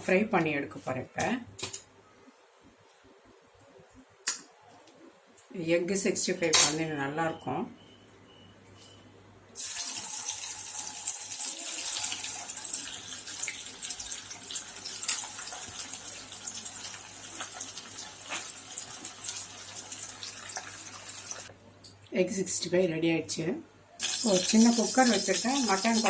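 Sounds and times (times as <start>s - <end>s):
food sizzling in hot oil: 9.6s - 21.5s, 24.0s - 26.0s.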